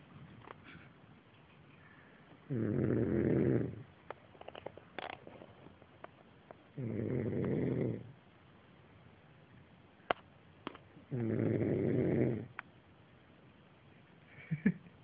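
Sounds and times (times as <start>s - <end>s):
man snoring: 2.5s - 3.8s, 6.8s - 8.1s, 11.1s - 12.5s.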